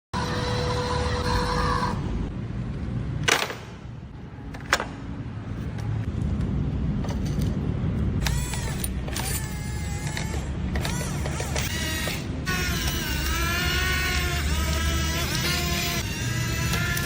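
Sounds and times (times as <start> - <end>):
toy excavator rumbling: 0.2 - 2.1, 8.2 - 17.0
small electric motor whining: 8.2 - 17.0.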